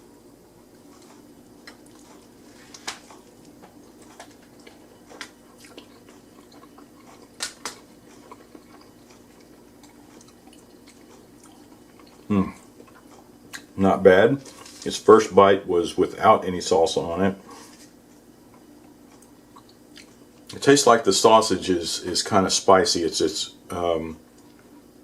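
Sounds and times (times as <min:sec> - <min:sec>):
steady low hum: 0:00.0 - 0:25.0
person chewing food: 0:00.7 - 0:13.8, 0:17.6 - 0:20.6.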